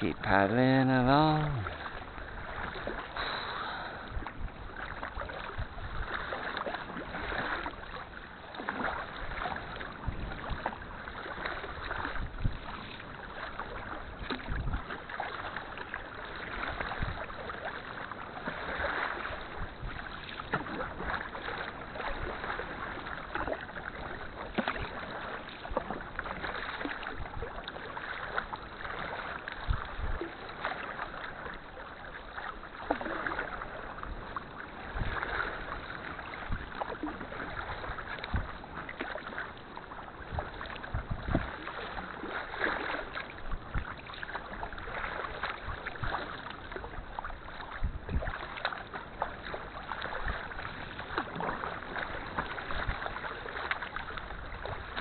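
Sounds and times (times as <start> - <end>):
paddle blades splashing: 0.0 - 55.0
water lapping and dripping: 0.0 - 55.0.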